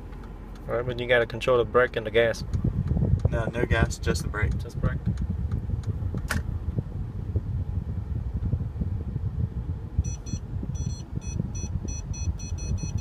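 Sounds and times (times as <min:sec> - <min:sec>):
parking sensor beeps: 0:10.0 - 0:13.0.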